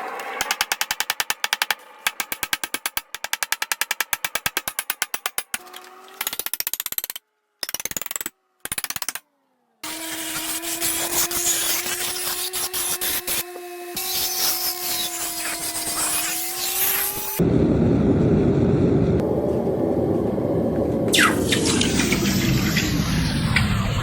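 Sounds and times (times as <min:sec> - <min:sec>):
electric grinder grinding steel: 0:09.8 - 0:17.4.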